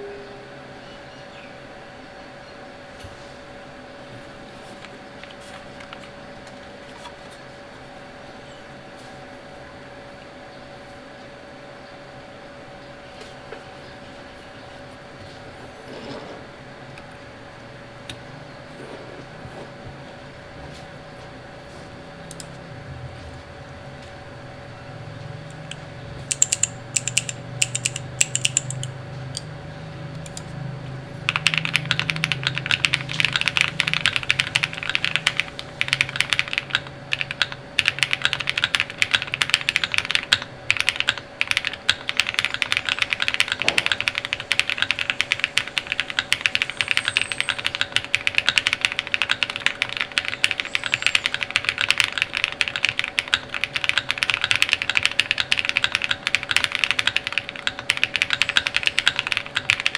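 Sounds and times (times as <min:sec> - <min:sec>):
typing on mechanical keyboard: 0:25.5 - 0:29.5, 0:30.2 - 0:30.5, 0:31.2 - 0:59.9.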